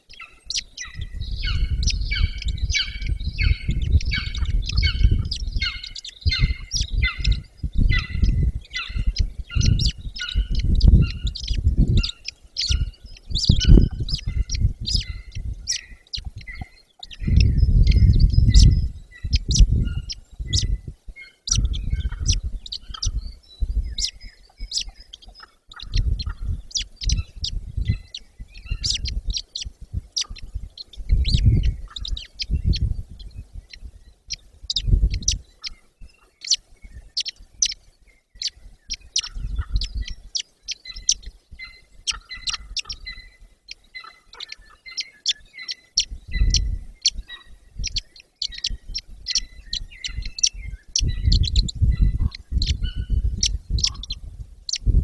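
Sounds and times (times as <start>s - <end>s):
birds chirping and calling: 0.0s - 55.0s
low rumbles: 0.9s - 34.1s.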